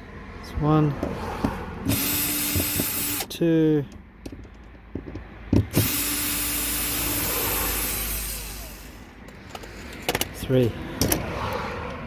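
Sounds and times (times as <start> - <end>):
drill click: 1.4 - 10.3
power drill running: 1.8 - 3.3, 5.7 - 9.2.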